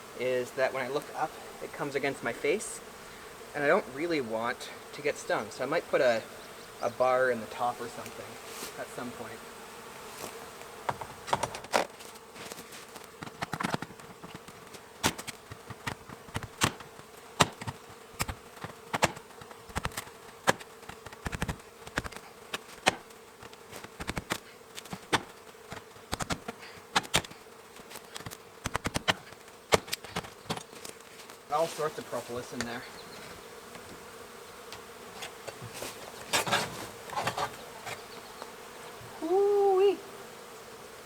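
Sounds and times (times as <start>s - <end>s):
bee colony humming: 0.0s - 41.0s
sharp clicks and knocks: 13.0s - 31.1s.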